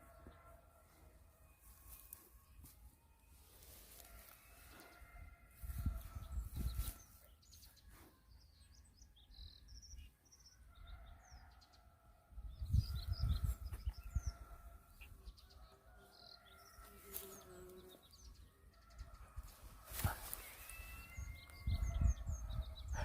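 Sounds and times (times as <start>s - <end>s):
small birds chirping: 12.6s - 15.6s.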